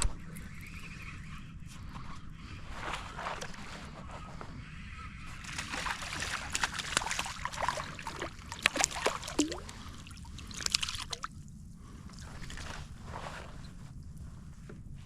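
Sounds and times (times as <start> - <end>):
water splashing and trickling: 5.4 - 11.4.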